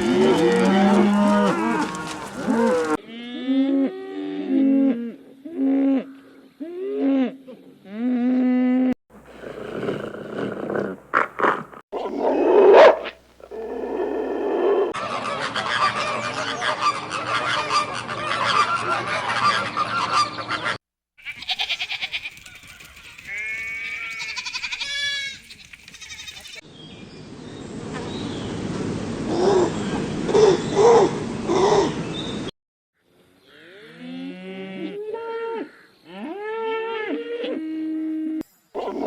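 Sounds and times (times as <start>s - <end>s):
farm animal calls: 0.0s - 3.0s, 11.1s - 26.6s, 38.8s - 39.0s.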